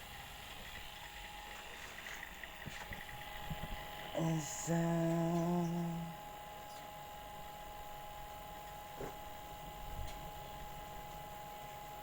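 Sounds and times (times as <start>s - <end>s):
person humming: 4.2s - 6.2s.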